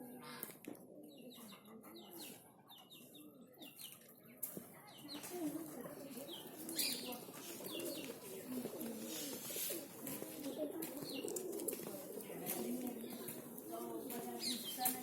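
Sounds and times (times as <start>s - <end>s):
bird cooing: 6.1s - 14.7s.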